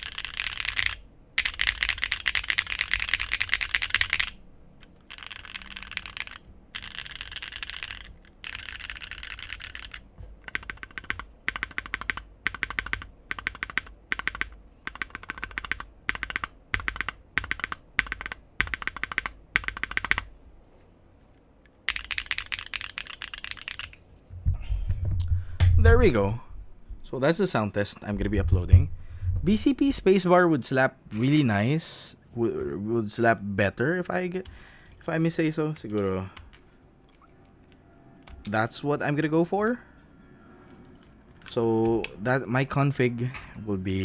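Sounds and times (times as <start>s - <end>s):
mechanical keyboard typing: 0.0s - 20.3s, 21.9s - 24.0s.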